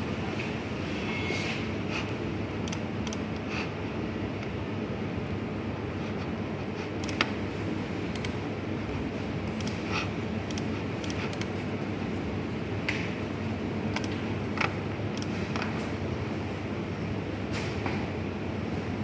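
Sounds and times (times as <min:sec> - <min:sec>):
sharp clicks: 0:02.6 - 0:03.3, 0:07.0 - 0:07.3, 0:08.1 - 0:08.4, 0:09.5 - 0:09.8, 0:10.5 - 0:11.5, 0:13.9 - 0:14.2.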